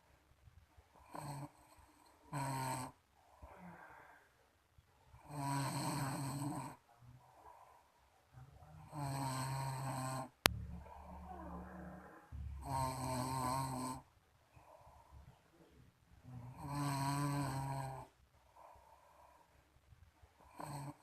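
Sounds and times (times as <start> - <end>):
quiet breaths: 0.0 - 21.0
person snoring: 1.0 - 4.0, 5.2 - 6.8, 8.8 - 14.9, 16.3 - 18.1, 20.5 - 21.0.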